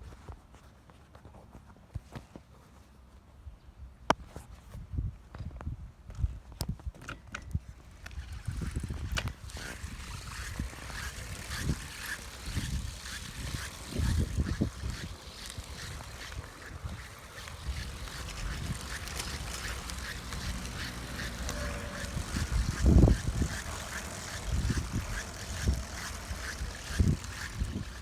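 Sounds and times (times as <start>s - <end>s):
wind rumble on microphone: 4.6s - 28.0s
bike bumps: 7.0s - 28.0s
bike ticking rattle: 7.8s - 28.0s.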